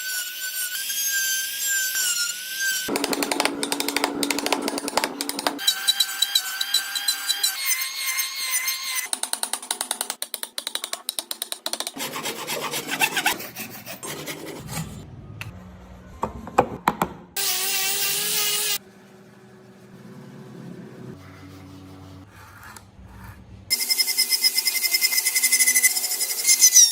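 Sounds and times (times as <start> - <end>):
rasping strokes on wood: 2.9 - 7.5, 11.8 - 15.0.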